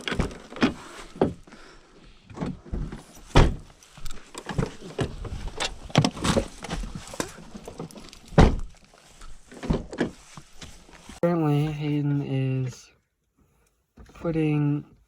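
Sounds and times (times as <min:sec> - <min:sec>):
knocks and clunks around a car: 0:02.2 - 0:08.8.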